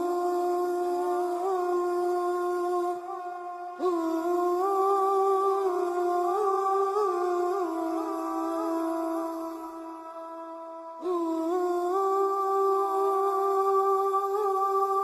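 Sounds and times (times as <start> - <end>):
person humming a slow melody: 0.0 - 15.0.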